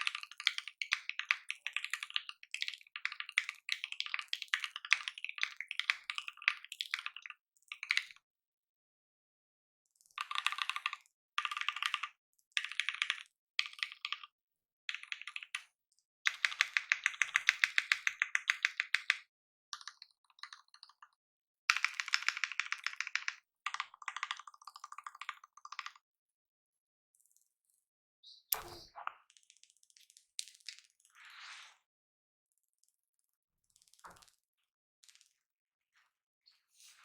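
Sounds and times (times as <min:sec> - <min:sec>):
typing on mechanical keyboard: 0:00.0 - 0:08.2, 0:10.1 - 0:14.3, 0:14.9 - 0:15.7, 0:16.3 - 0:21.1, 0:21.7 - 0:26.0.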